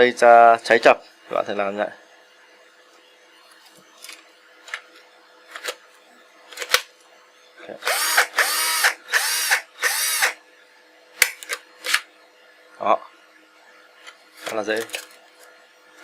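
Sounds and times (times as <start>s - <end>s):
cordless drill motor whirring: 7.8s - 10.4s.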